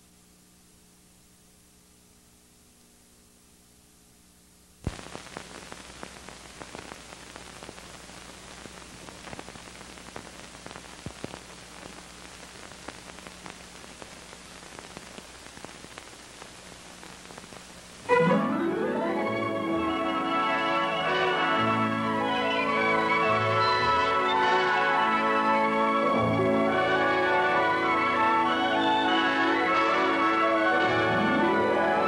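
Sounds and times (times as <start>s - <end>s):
old film soundtrack hiss and crackle: 0.0s - 32.0s
pop: 4.8s - 18.1s.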